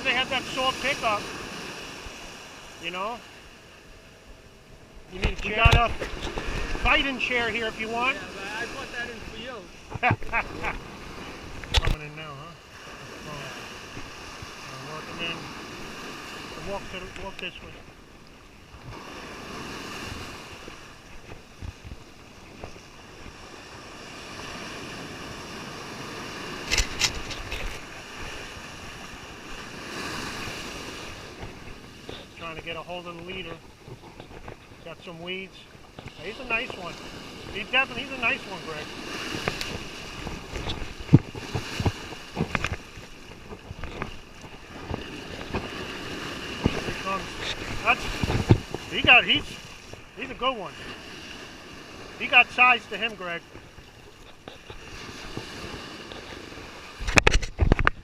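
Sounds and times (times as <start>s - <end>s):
surf breaking on beach: 0.0s - 3.8s, 5.1s - 18.0s, 18.6s - 58.0s
wind buffeting microphone: 4.3s - 12.0s, 35.9s - 50.2s.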